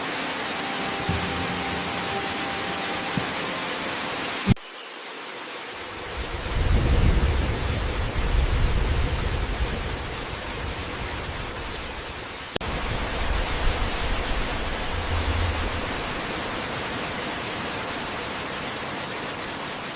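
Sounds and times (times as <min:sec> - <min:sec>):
waterfall rushing: 0:00.0 - 0:19.9.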